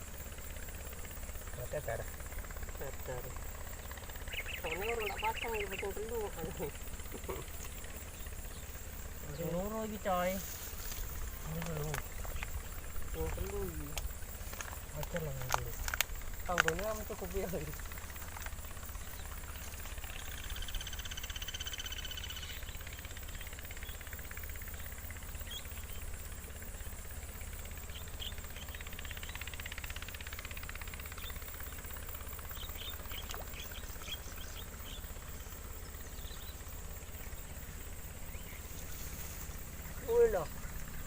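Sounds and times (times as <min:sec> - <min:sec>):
steady low rumble: 0:00.0 - 0:23.4.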